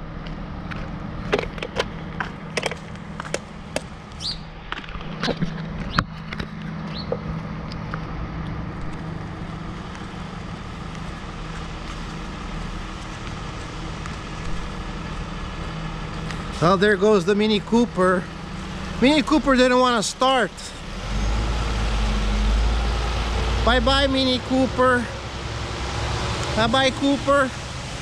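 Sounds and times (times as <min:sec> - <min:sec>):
truck engine running: 0:00.0 - 0:28.0
sharp metallic clicks and knocks: 0:00.7 - 0:09.0.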